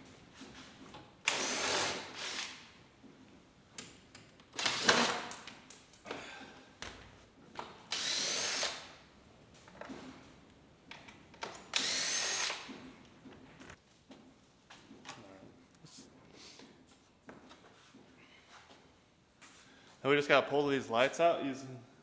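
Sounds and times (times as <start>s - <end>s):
power drill spinning bolts: 1.3s - 2.6s, 4.5s - 5.7s, 7.9s - 8.8s, 11.6s - 12.7s.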